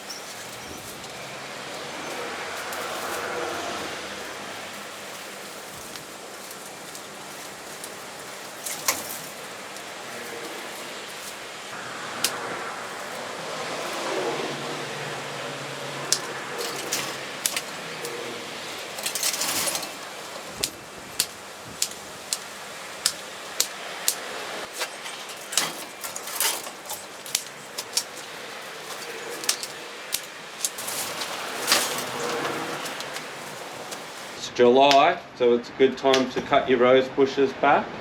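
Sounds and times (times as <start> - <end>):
branches and foliage rustling: 0.0 - 34.4
pruning shears snipping: 0.0 - 34.4.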